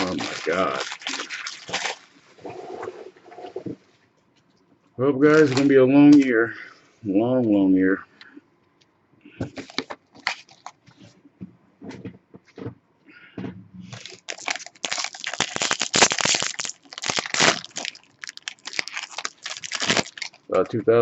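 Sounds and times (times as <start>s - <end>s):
foil wrapper crinkling: 0.0s - 2.2s, 5.3s - 6.3s, 9.5s - 10.8s, 13.9s - 20.7s
foil wrapper tearing: 0.0s - 2.2s, 5.3s - 5.7s, 9.6s - 10.8s, 13.9s - 20.5s.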